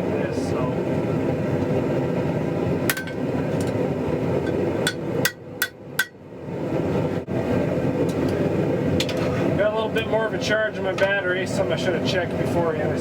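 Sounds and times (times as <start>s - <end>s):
steady low rumble: 0.0s - 13.0s
hammer ringing on steel bar: 4.9s - 6.2s.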